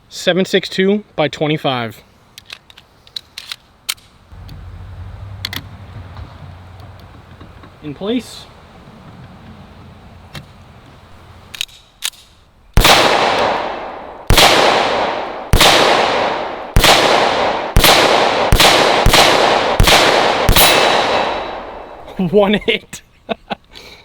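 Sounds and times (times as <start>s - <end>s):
gun handling clicks: 2.3s - 4.6s, 5.4s - 5.7s, 11.5s - 12.4s
pistol shots echoing: 12.8s - 22.1s.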